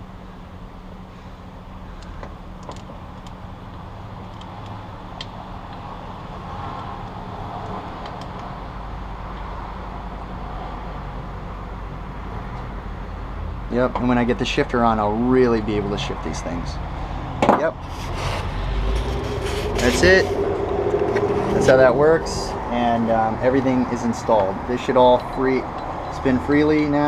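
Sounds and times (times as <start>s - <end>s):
low mechanical hum: 14.7s - 25.2s.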